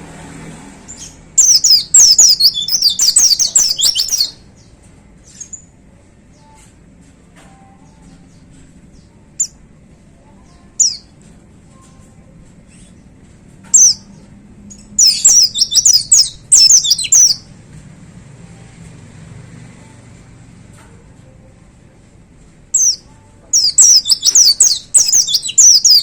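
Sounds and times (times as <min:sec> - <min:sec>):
bird chirping: 0:00.9 - 0:04.7, 0:13.6 - 0:17.5, 0:22.7 - 0:26.0.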